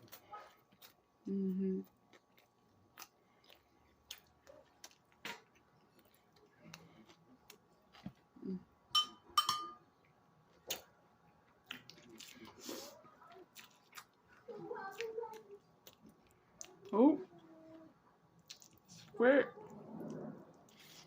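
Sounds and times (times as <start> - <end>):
chewing and handling food: 0.0 - 8.8, 9.9 - 21.0
utensil clinking on plate: 9.0 - 9.8.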